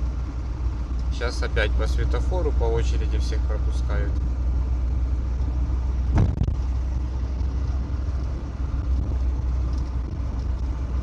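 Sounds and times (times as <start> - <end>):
vehicle rumbling along road: 0.0 - 11.0
short thump: 6.1 - 6.6.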